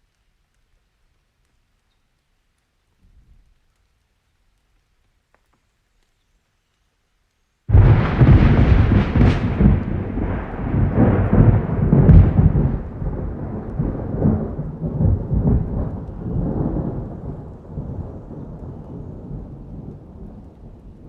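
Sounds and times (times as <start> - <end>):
rain hissing: 0.0 - 21.0
thunder rumbling and cracking: 7.7 - 21.0.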